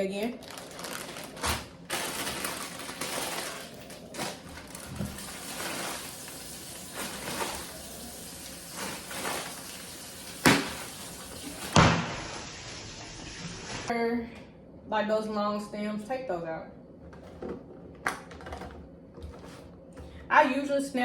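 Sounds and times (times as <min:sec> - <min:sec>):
kitchen faucet running: 0:04.8 - 0:13.9.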